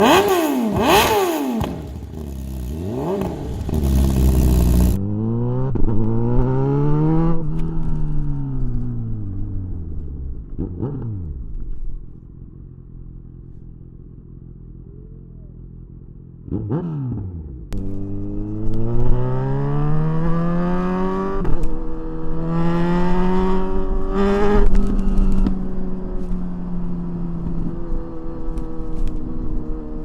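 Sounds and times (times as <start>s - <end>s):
motorcycle engine revving: 0.0s - 12.2s, 14.3s - 30.0s.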